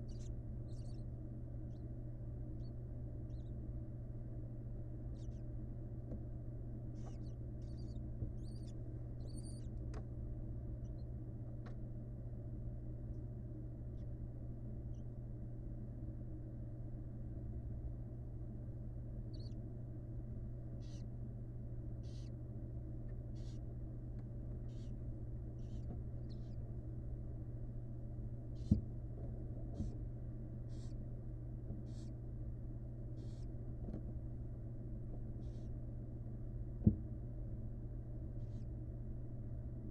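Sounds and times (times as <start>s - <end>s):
low electrical hum: 0.0s - 39.9s
owl breathy hissing calls: 7.0s - 9.8s, 20.8s - 21.1s, 22.0s - 22.4s, 23.3s - 23.7s, 24.7s - 25.0s, 25.6s - 26.6s, 30.6s - 31.0s, 31.8s - 32.2s, 33.2s - 33.5s, 35.4s - 35.8s, 38.4s - 38.7s.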